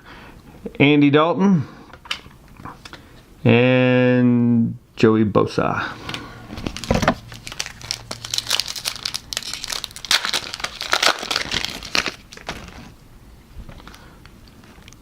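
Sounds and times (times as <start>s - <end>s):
foil wrapper crinkling and tearing: 6.6s - 12.9s.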